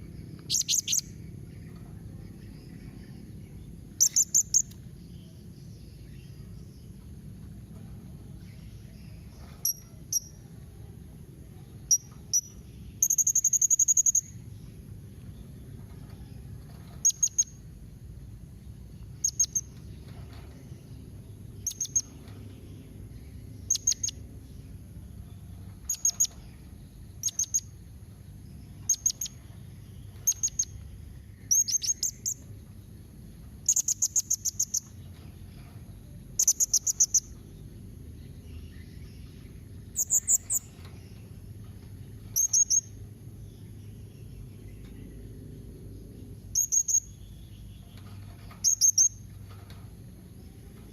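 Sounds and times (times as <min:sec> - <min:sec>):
low hum: 0:00.0 - 0:50.9
parrot chirping: 0:00.4 - 0:01.1.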